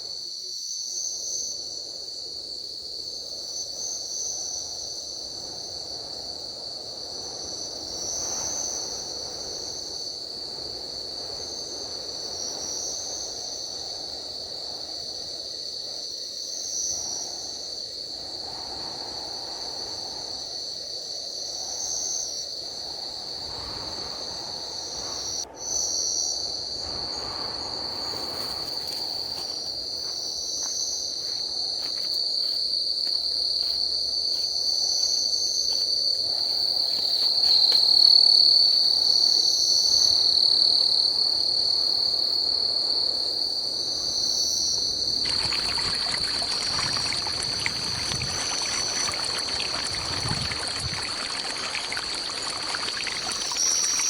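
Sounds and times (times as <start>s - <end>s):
insects buzzing: 2.1s - 54.0s
pulsing insect trill: 27.4s - 54.0s.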